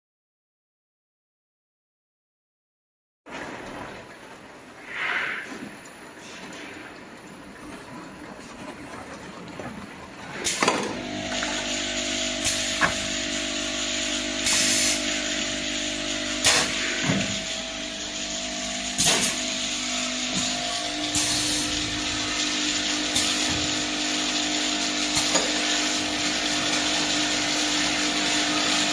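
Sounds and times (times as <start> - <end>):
motor hum: 5.8 - 28.9.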